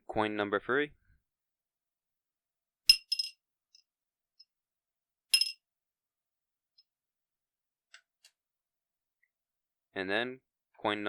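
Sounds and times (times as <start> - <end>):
coin clinking on a bowl: 2.9 - 3.4, 5.3 - 5.6.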